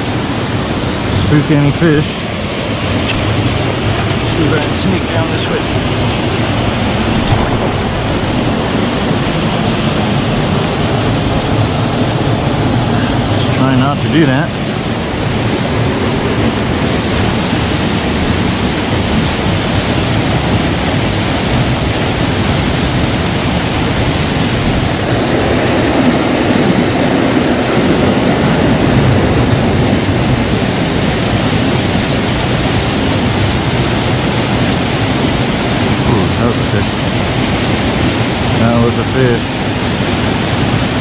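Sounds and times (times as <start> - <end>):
water rushing over rocks: 0.0 - 26.2.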